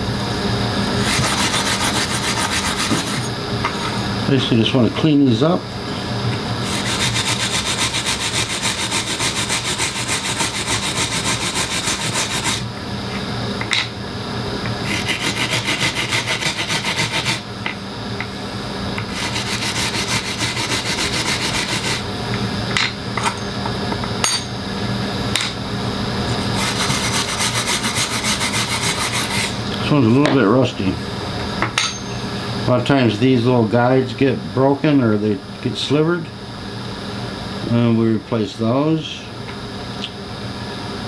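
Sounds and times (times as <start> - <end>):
motor hum: 0.0 - 30.2
wire wheel brushing metal: 6.6 - 12.7.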